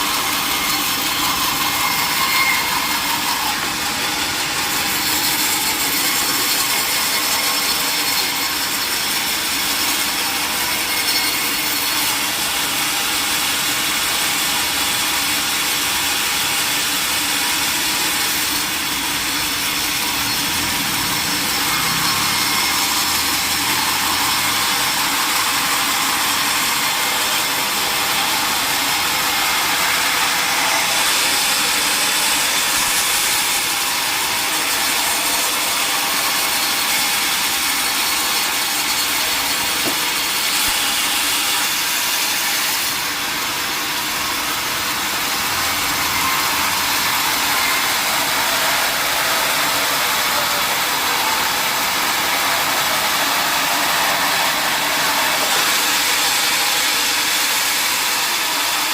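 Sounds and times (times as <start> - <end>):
saw cutting through log: 0.0 - 58.9.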